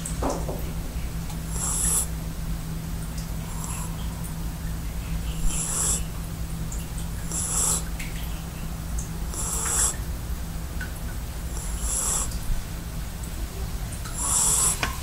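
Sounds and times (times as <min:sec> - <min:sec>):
puppy snoring: 0:01.5 - 0:02.1, 0:03.4 - 0:04.0, 0:05.4 - 0:06.2, 0:07.2 - 0:07.9, 0:09.2 - 0:10.1, 0:11.5 - 0:12.4, 0:14.1 - 0:15.0.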